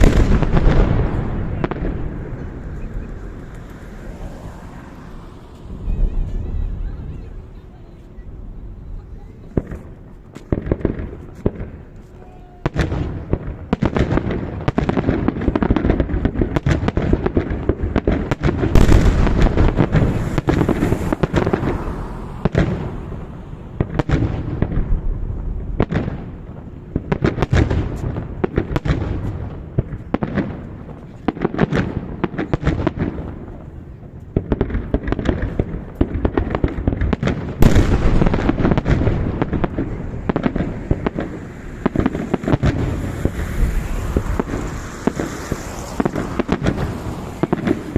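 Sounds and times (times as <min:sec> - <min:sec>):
fireworks bursts and bangs: 0:00.0 - 0:47.9.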